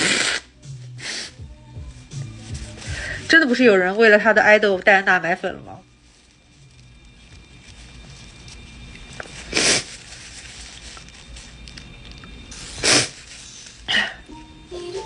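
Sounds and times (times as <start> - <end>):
woman sniffing: 0.0 - 1.4, 9.5 - 9.9, 12.7 - 14.3.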